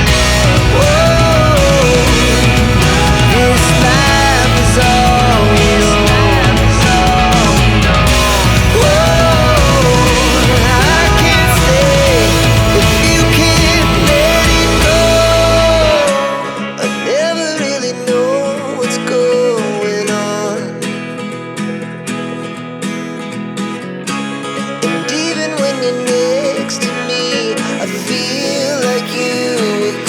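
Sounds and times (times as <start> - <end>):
guitar background music: 0.0 - 30.0.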